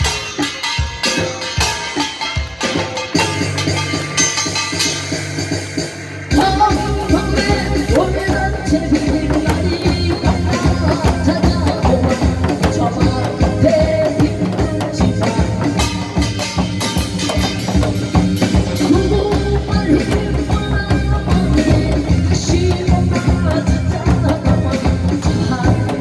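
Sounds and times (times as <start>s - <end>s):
upbeat song with drum beat: 0.0s - 26.0s.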